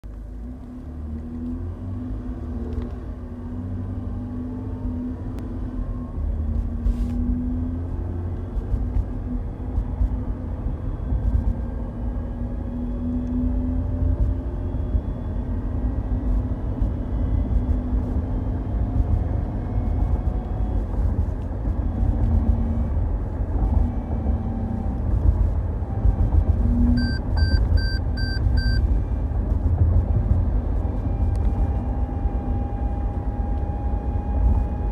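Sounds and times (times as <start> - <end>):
road and engine rumble: 0.0 - 34.9
quick beeps: 26.9 - 28.8.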